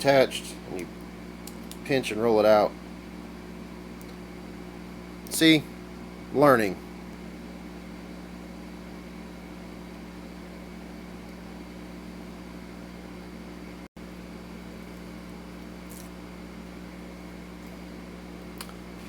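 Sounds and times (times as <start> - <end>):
fan humming with hiss: 0.0 - 19.0.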